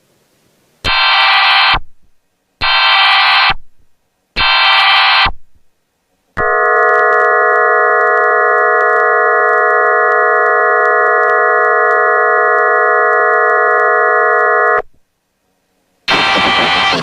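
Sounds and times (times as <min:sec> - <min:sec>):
screeching digital data header: 0:00.9 - 0:01.8, 0:02.6 - 0:03.6, 0:04.4 - 0:05.4, 0:06.4 - 0:14.8, 0:16.1 - 0:17.0.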